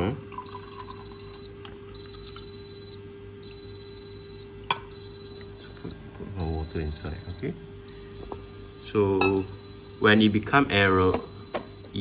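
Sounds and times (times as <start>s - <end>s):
electronic alarm beeping: 0.4s - 12.0s.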